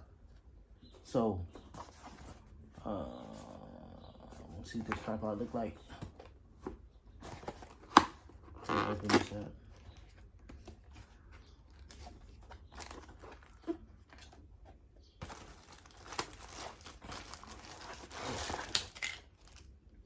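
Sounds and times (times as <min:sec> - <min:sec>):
packaging crinkling and tearing: 0:07.4 - 0:09.9, 0:12.7 - 0:14.3, 0:15.2 - 0:19.7.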